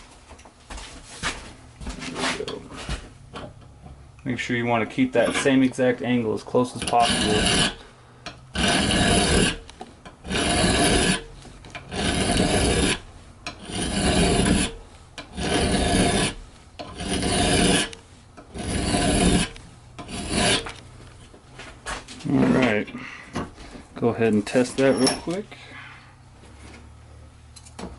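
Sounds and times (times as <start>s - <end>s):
hand file rasping on steel: 6.6s - 7.9s, 8.5s - 20.8s.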